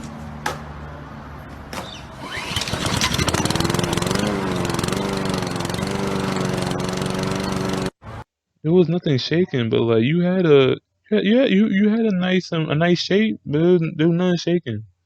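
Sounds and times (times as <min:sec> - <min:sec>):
lawn mower engine: 0:01.8 - 0:08.2.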